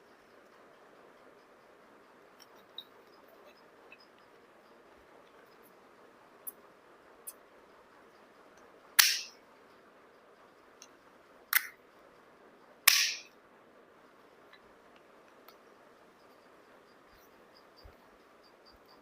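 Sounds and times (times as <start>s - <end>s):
phone holder clamp snapping: 9.0s - 9.3s.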